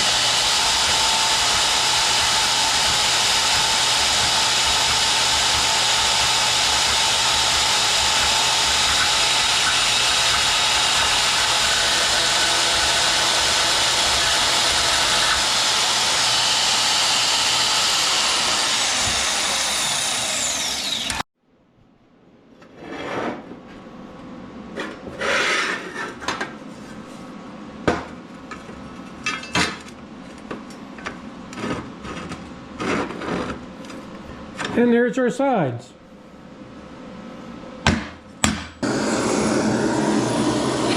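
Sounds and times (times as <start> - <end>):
power tool running: 0.0 - 21.3, 38.8 - 40.9.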